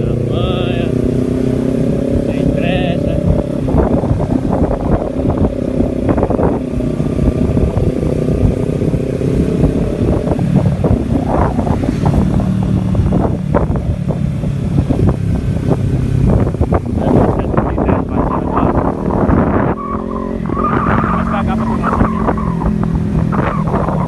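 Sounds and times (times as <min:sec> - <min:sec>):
vehicle engine running: 0:00.0 - 0:24.0
wind buffeting microphone: 0:00.0 - 0:24.0.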